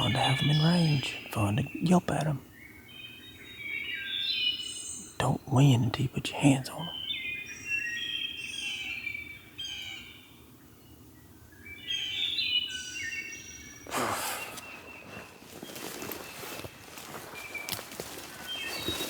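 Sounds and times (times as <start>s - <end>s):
songbird singing: 0.0s - 19.0s
rustle in leaves: 14.2s - 19.0s.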